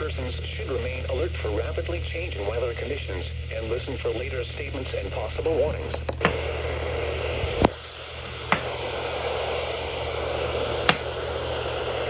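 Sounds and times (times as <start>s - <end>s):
low hum: 0.0s - 12.0s
radio static hiss: 0.0s - 12.0s.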